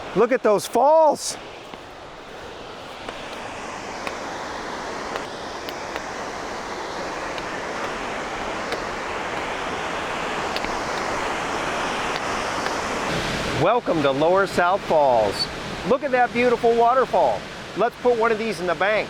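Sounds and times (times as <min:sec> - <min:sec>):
waterfall rushing: 0:00.0 - 0:14.2.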